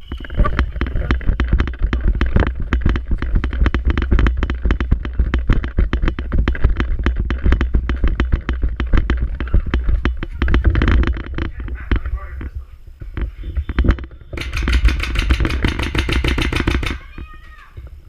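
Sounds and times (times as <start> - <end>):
wind rumble: 0.0 - 18.0
airsoft guns firing: 14.4 - 17.2.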